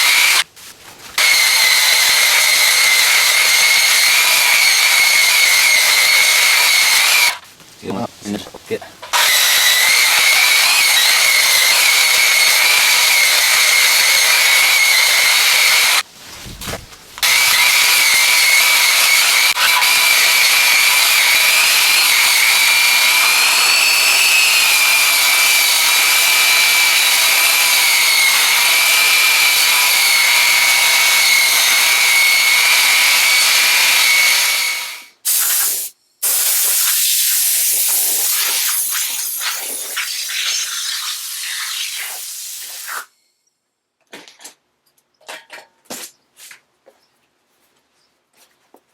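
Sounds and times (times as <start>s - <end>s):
hiss of sanding wood: 35.2s - 43.1s.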